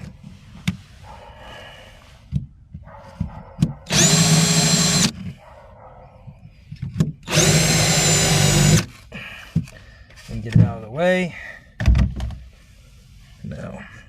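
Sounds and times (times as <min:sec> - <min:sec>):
power drill whining: 0:03.9 - 0:05.2, 0:07.2 - 0:09.0.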